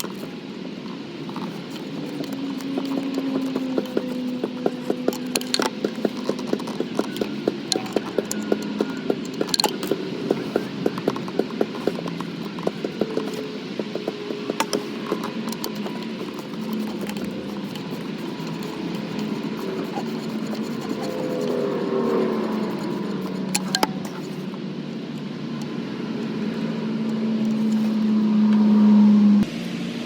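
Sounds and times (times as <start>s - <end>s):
steady low hum: 0.0s - 30.0s
hand ratchet clicking: 1.4s - 24.5s.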